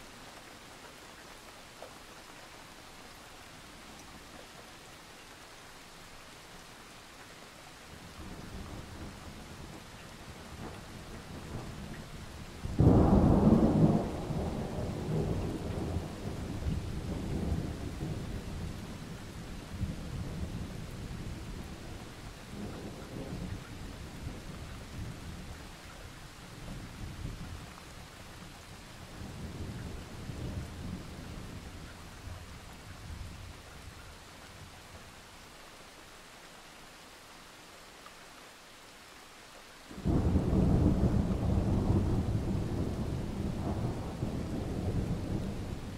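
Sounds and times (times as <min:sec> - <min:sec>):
steady rain: 0:00.0 - 0:45.9
thunder clap and rumble: 0:12.6 - 0:25.6, 0:40.0 - 0:45.9.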